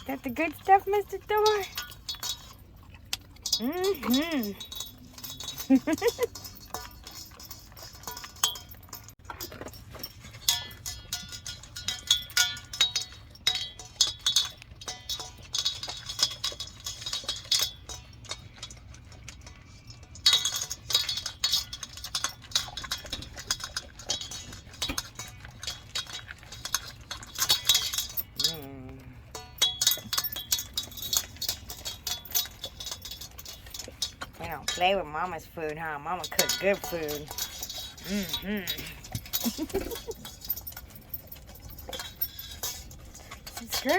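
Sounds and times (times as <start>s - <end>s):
clinking against food bowls: 0.0s - 43.9s
dogs chewing: 0.0s - 43.9s.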